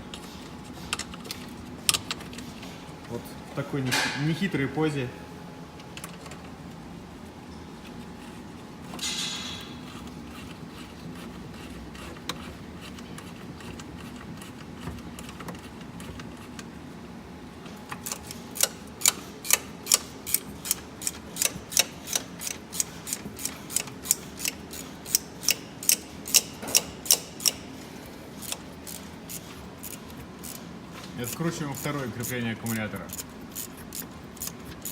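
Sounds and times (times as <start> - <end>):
ratchet wrench clicking: 18.0 - 27.6, 28.4 - 30.6, 31.3 - 34.9.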